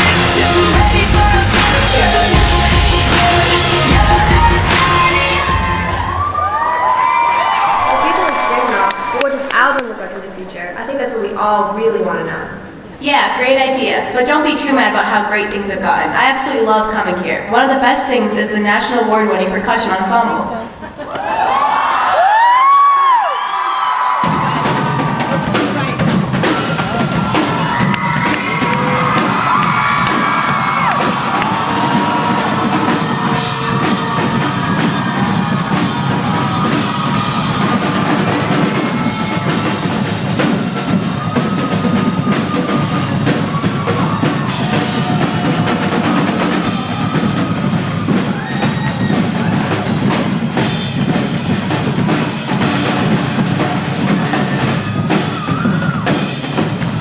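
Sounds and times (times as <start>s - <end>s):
percussion ensemble drumming: 0.0s - 6.4s, 24.1s - 57.0s.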